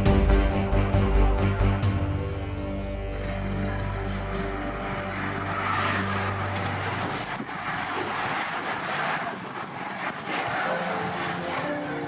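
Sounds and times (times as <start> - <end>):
racing bicycles whooshing past: 3.1 - 12.0.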